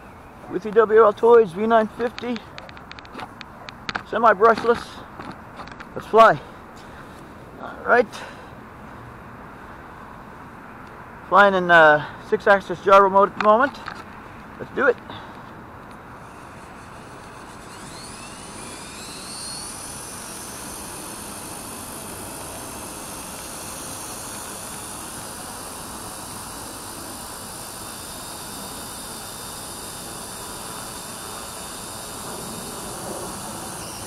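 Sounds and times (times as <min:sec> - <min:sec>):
model helicopter motor whine: 0:15.9 - 0:34.0
rotor rushing noise: 0:16.0 - 0:34.0.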